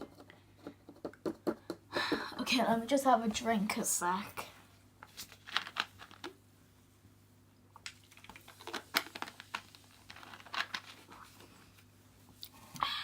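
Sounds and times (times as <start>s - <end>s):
light handling clicks and crinkles: 5.0s - 6.4s, 7.8s - 12.5s.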